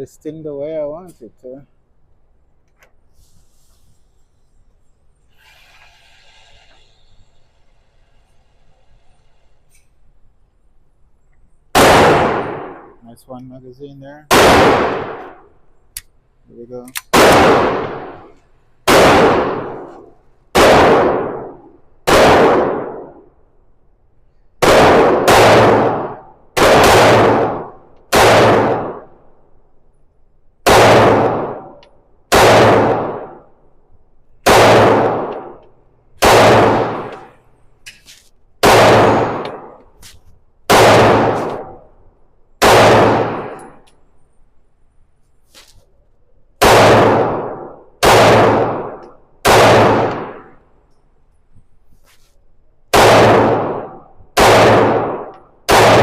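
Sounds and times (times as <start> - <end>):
pistol shots with ringing tail: 11.7 - 13.0, 14.3 - 15.5, 17.1 - 23.2, 24.6 - 29.2, 30.6 - 33.5, 34.4 - 35.6, 36.2 - 37.4, 38.6 - 39.8, 40.7 - 41.9, 42.6 - 43.8, 46.6 - 50.6, 52.9 - 56.0.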